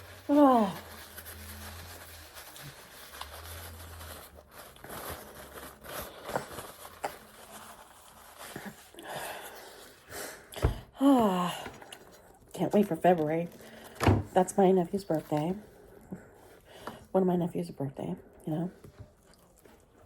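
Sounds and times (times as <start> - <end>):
person chewing food: 19.1 - 20.0.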